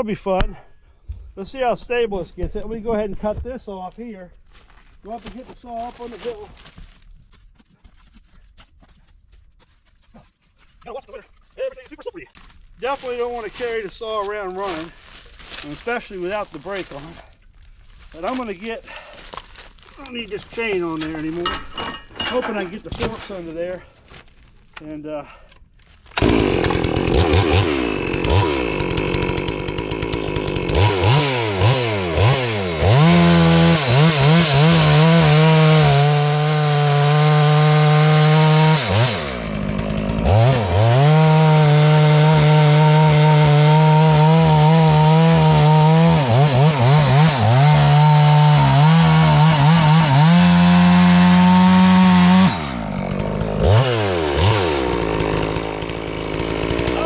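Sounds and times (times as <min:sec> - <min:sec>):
chainsaw cutting through log: 0:26.1 - 0:57.0.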